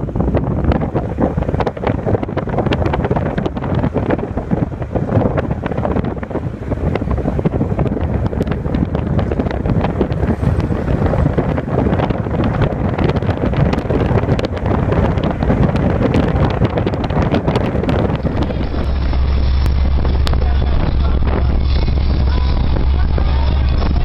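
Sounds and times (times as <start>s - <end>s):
wind buffeting microphone: 0.0s - 24.0s.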